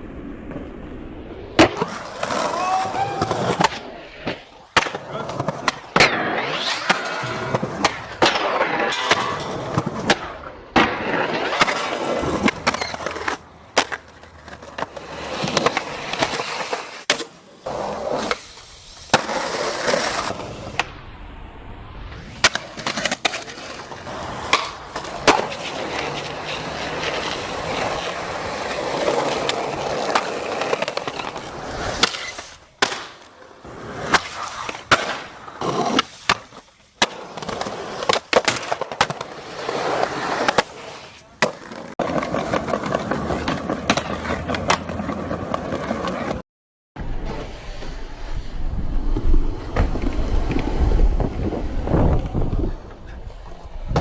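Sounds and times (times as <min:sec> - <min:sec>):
skateboard wheels rolling on concrete: 0:00.0 - 0:46.4, 0:47.0 - 0:54.0
skateboard clacks: 0:01.6 - 0:17.4, 0:22.4 - 0:46.4.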